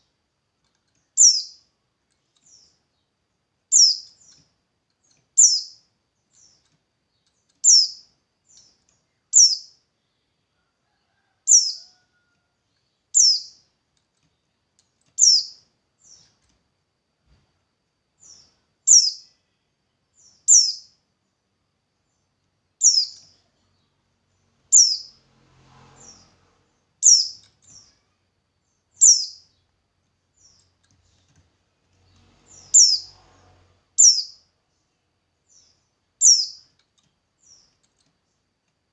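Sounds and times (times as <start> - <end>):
bird high falling chirp: 29.0 - 29.6, 34.0 - 34.4, 35.5 - 36.6.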